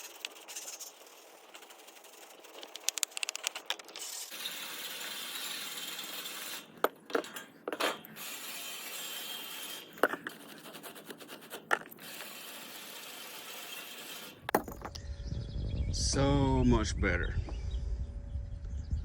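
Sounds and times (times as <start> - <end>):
sharp clicks and knocks: 2.5 - 4.1, 11.6 - 12.0.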